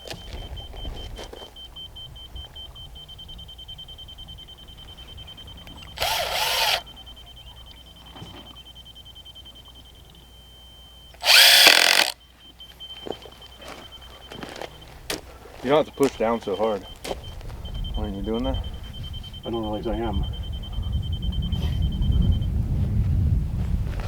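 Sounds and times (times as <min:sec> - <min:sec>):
power drill driving screws: 0:06.0 - 0:06.8, 0:11.2 - 0:12.2.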